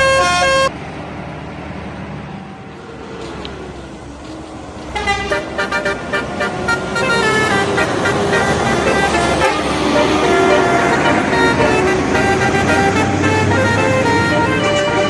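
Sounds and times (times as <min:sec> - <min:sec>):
musical air horn tooting melody: 0:00.0 - 0:00.7, 0:05.0 - 0:15.0
engine and road noise: 0:00.0 - 0:15.0.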